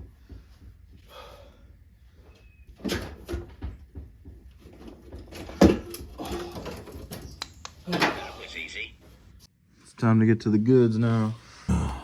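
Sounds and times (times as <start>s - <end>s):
tools and engine parts clanking: 2.8s - 8.2s.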